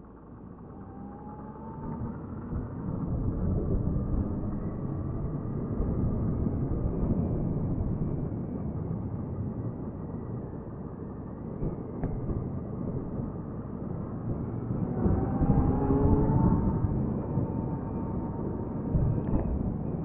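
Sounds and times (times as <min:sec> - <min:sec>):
wind noise: 0:11.3 - 0:20.0.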